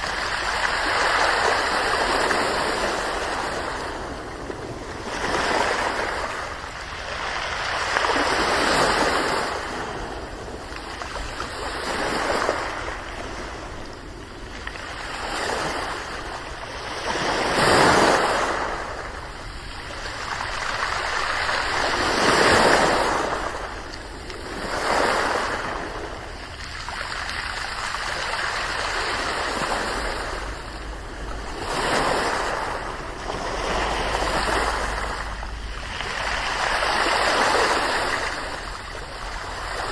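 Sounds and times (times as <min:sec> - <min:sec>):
ocean waves breaking: 0:00.0 - 0:39.9.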